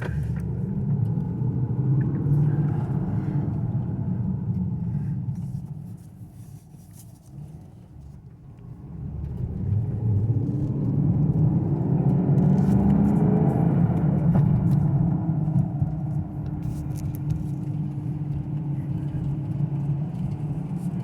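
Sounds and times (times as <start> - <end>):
car engine accelerating: 0.0 - 6.6, 7.2 - 21.0.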